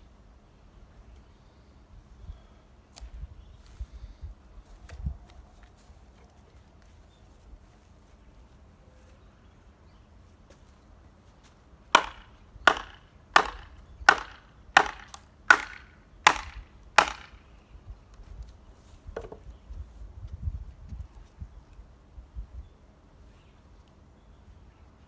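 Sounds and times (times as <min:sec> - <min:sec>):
axe chopping wood: 0:12.0 - 0:17.4.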